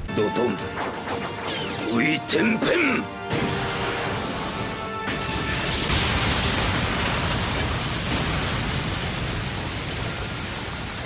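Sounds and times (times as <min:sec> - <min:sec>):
background music: 0:00.0 - 0:06.6
earth and rock rumbling: 0:03.7 - 0:11.0.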